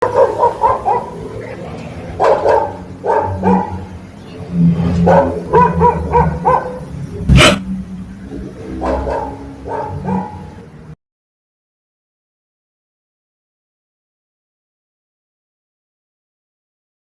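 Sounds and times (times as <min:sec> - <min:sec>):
dog barking: 0:00.0 - 0:01.5, 0:02.1 - 0:04.0, 0:05.0 - 0:07.6, 0:08.8 - 0:10.6.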